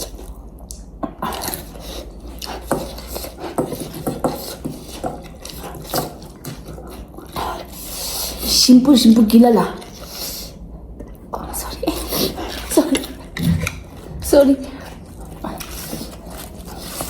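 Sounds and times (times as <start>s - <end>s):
chewing and slurping: 12.5s - 17.0s.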